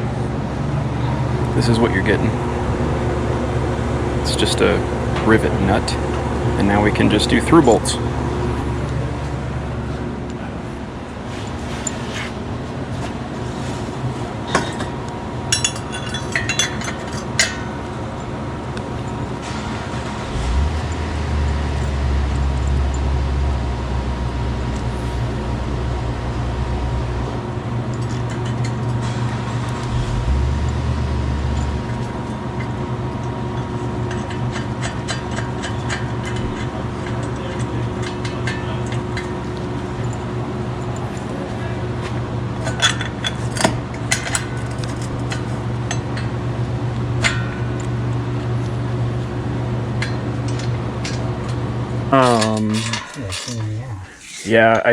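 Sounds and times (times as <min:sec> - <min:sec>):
deep rumble: 0:00.0 - 0:11.1, 0:19.9 - 0:28.0, 0:28.8 - 0:34.0
low mechanical hum: 0:00.0 - 0:54.9
thin whine: 0:15.5 - 0:40.2.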